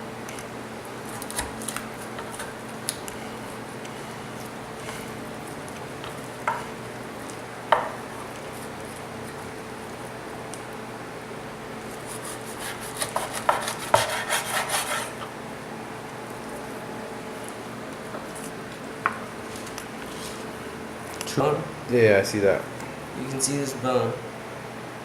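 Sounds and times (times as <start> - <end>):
knife crackling through chicken: 0.3 - 10.7, 11.9 - 15.3.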